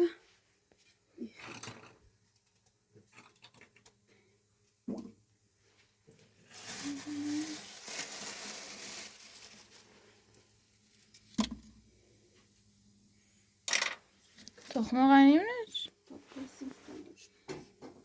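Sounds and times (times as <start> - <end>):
rustling: 6.4 - 10.3.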